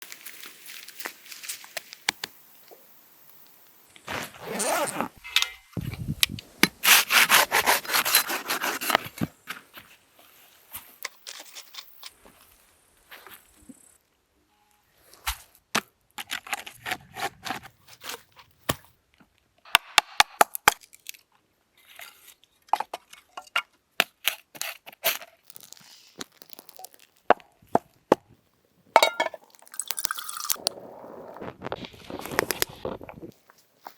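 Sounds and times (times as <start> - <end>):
wood cracking and crunching: 25.0 - 27.5.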